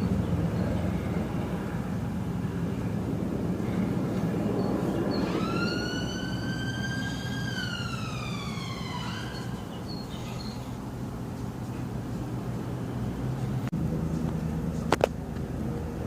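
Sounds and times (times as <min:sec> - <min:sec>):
low background rumble: 0:00.0 - 0:16.0
emergency vehicle siren wailing: 0:03.6 - 0:10.3.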